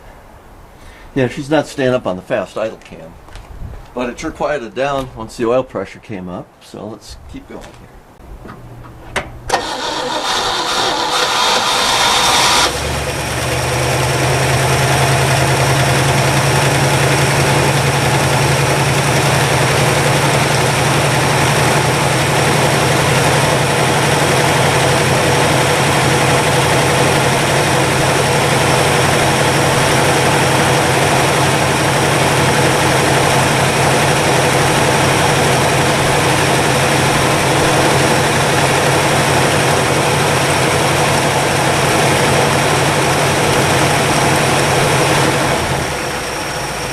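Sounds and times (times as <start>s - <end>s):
car engine idling: 8.6s - 46.9s.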